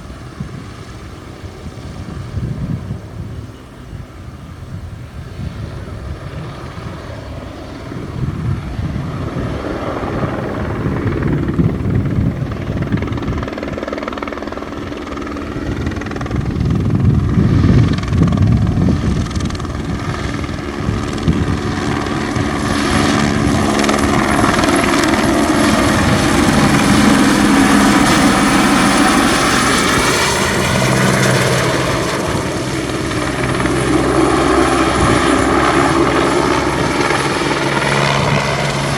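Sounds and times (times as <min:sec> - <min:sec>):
helicopter flying past: 0:00.0 - 0:38.9.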